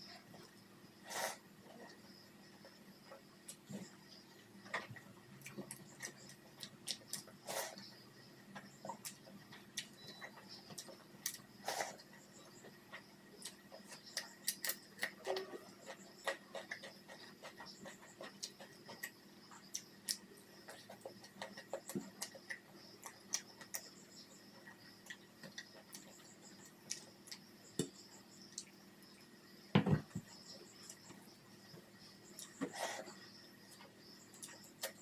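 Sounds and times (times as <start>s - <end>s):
person chewing food: 4.7s - 23.9s
dull thump: 29.7s - 30.3s.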